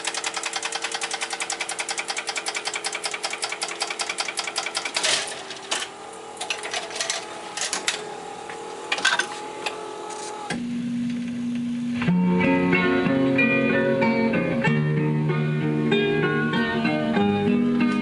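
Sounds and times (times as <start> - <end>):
jukebox mechanism rapid clicking: 0.0 - 8.0
mechanism clatter and clunks: 0.0 - 8.1.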